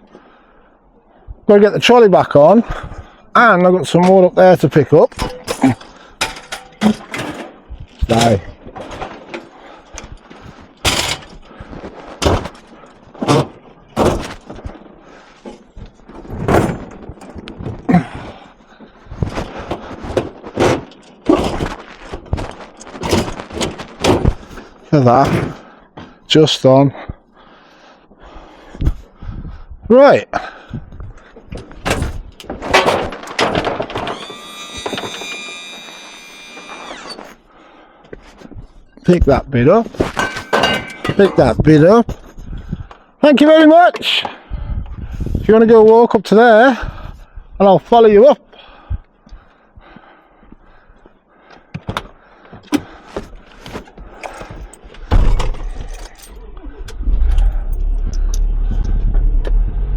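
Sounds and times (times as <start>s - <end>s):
metal scrap clattering: 5.1s - 7.5s, 10.8s - 11.4s, 40.0s - 41.5s
scrap metal knocks and thuds: 5.1s - 9.5s, 12.1s - 14.7s, 16.1s - 17.8s, 19.2s - 25.6s, 31.6s - 34.1s, 39.9s - 41.7s, 54.1s - 59.8s
electric motor whine: 33.8s - 37.4s.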